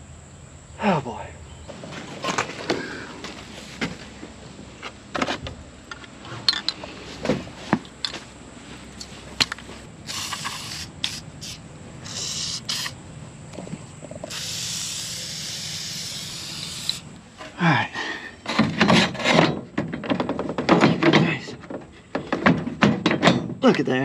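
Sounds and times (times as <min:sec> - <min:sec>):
aerosol can spraying: 0:10.1 - 0:13.0, 0:14.2 - 0:17.2.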